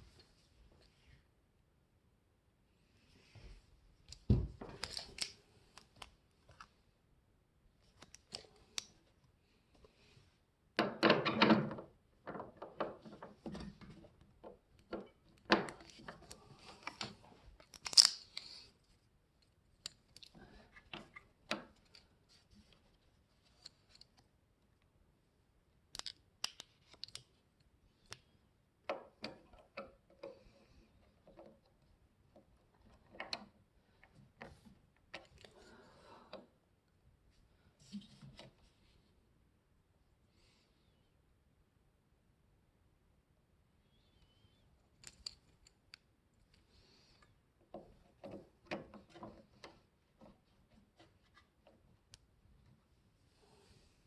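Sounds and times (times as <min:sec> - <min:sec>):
objects being handled: 0:03.3 - 0:06.8, 0:07.8 - 0:24.4, 0:44.8 - 0:53.6.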